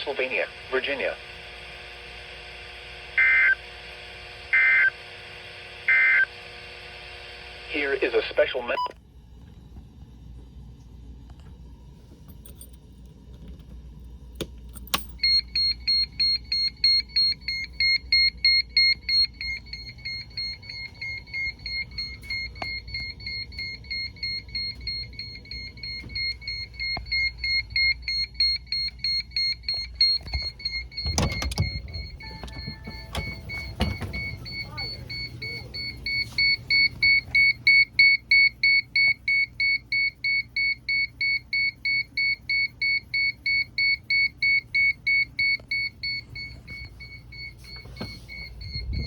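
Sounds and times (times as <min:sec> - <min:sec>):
low hum: 0:09.0 - 0:36.0
high electronic beeping alarm: 0:14.9 - 0:49.0.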